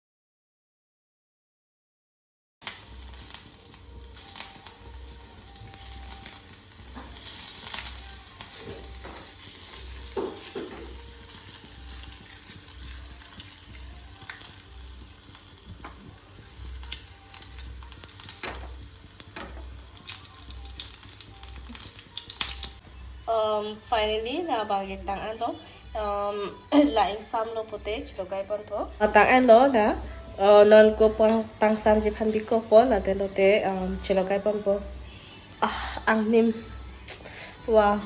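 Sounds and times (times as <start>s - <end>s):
crackles and pops: 2.6s - 22.8s
food sizzling in a pan: 2.6s - 29.0s.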